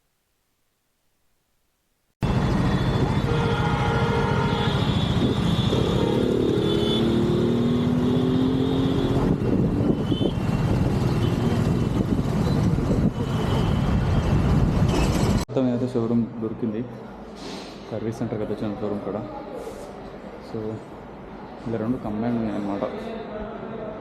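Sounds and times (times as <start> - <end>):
vehicle engines running: 2.2 - 15.5.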